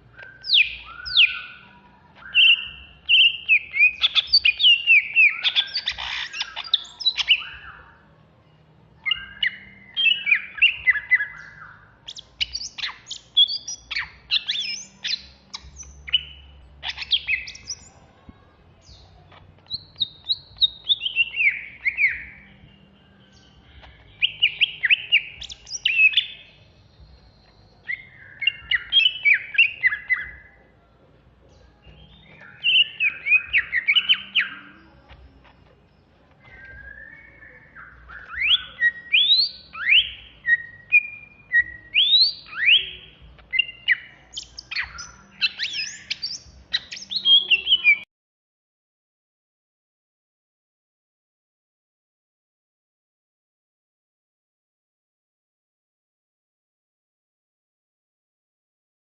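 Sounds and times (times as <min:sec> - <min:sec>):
bird singing chips and whistles: 0:00.1 - 0:01.6, 0:02.2 - 0:07.8, 0:09.0 - 0:17.9, 0:19.7 - 0:22.5, 0:23.4 - 0:26.6, 0:27.3 - 0:30.4, 0:32.0 - 0:34.7, 0:36.5 - 0:48.1.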